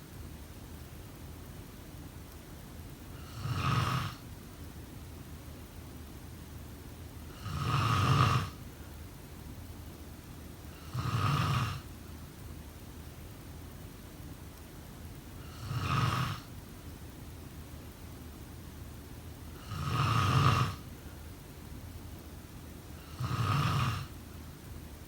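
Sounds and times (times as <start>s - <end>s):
steady low hum: 0.0s - 25.0s
person snoring: 7.4s - 8.6s, 10.8s - 11.8s, 15.5s - 16.5s, 19.6s - 20.8s, 23.0s - 24.1s.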